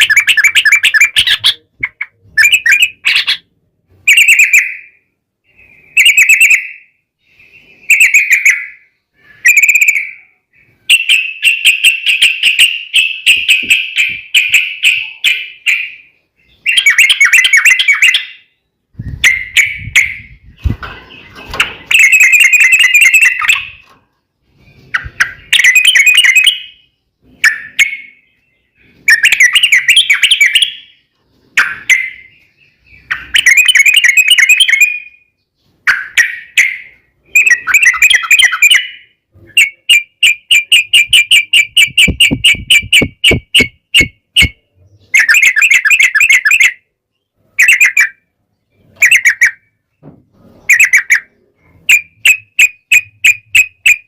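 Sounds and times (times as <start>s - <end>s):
bird fast repeated notes: 0.0s - 3.5s, 10.9s - 23.8s, 24.8s - 31.0s, 31.6s - 35.2s, 35.8s - 44.6s, 45.2s - 46.9s, 49.0s - 49.8s, 50.6s - 54.0s.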